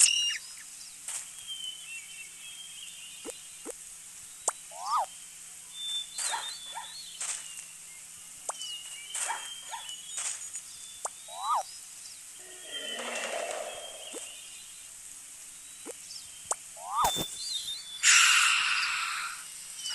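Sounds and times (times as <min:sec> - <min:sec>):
animal chirps and whistles: 0:00.0 - 0:00.4, 0:05.7 - 0:07.4, 0:11.3 - 0:11.7, 0:12.4 - 0:14.5, 0:15.8 - 0:19.9
rising-and-falling animal calls: 0:12.4 - 0:14.6, 0:16.8 - 0:19.9.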